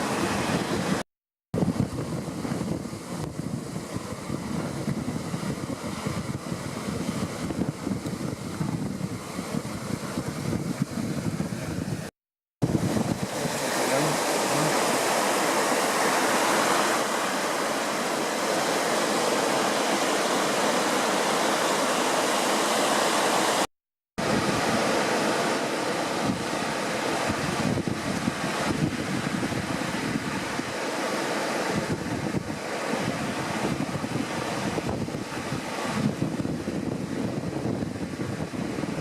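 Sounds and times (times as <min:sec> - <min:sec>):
surf: 0:00.0 - 0:01.0, 0:01.6 - 0:39.0
wind: 0:00.0 - 0:39.0.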